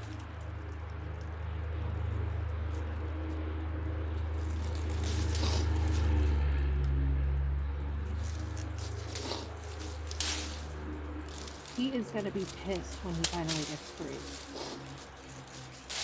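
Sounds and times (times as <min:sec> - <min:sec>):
low mechanical hum: 0:00.0 - 0:16.0
light rustling: 0:08.1 - 0:16.0.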